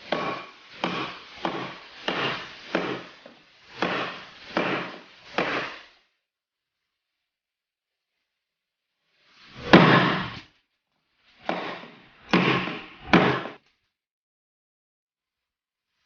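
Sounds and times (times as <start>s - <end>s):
knife chopping into wood: 0.1s - 3.1s, 3.7s - 5.9s, 11.4s - 13.6s.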